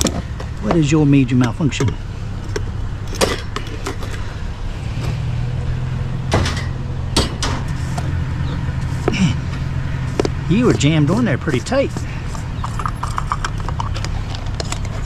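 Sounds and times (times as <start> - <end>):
steady low hum: 0.0 - 15.0
sharp clicks and knocks: 6.3 - 8.1.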